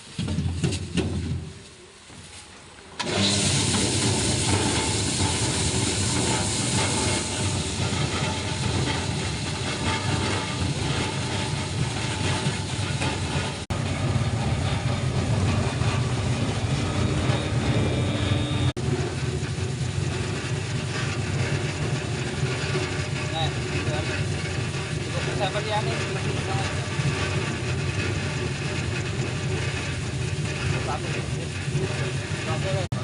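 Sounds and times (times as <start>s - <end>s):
potato peeling machine running: 3.0s - 33.0s.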